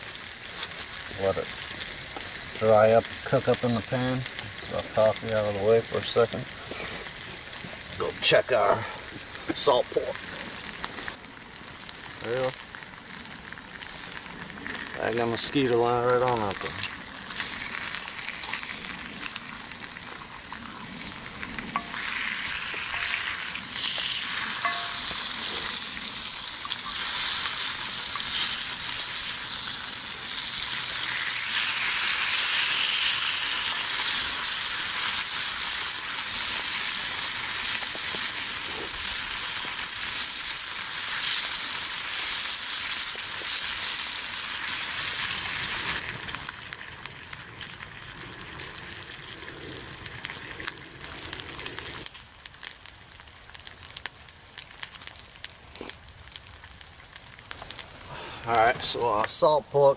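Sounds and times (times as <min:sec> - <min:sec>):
pork sizzling in a pan: 0:00.0 - 0:59.9.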